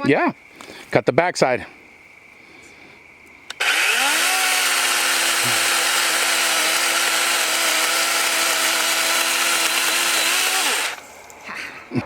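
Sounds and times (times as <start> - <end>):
chainsaw chain buzzing: 3.5 - 11.1
electric chainsaw motor whining: 3.5 - 11.1.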